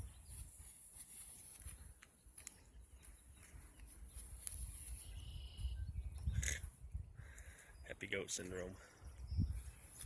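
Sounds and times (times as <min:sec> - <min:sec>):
soft rustles: 0:00.0 - 0:05.3
wind rumble on microphone: 0:03.3 - 0:07.6, 0:09.0 - 0:10.0.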